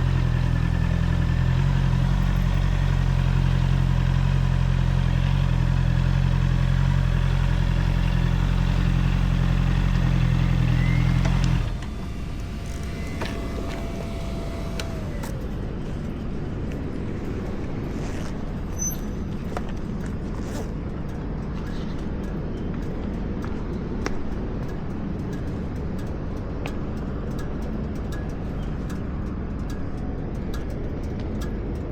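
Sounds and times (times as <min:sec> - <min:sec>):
motorcycle engine running: 0:00.0 - 0:18.6.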